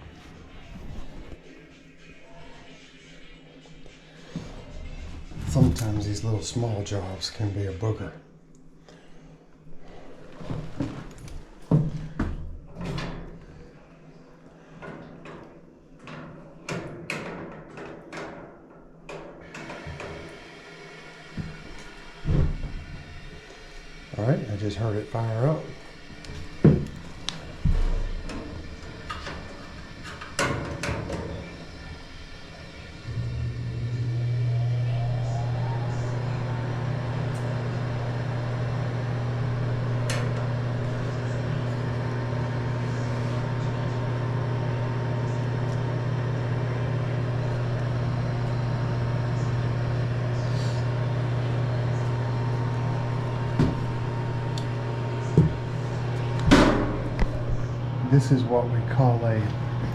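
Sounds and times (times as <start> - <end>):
furnace low hum: 0.0 - 17.4, 18.2 - 59.9.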